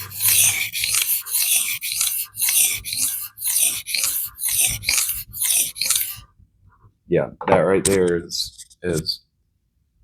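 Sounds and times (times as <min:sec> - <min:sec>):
knife blade scraping on sharpener: 0:00.0 - 0:06.3.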